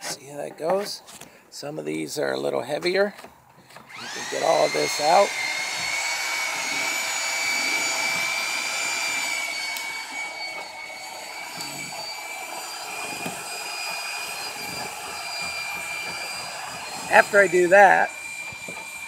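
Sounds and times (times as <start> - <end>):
electric machine whining: 3.8 - 19.0.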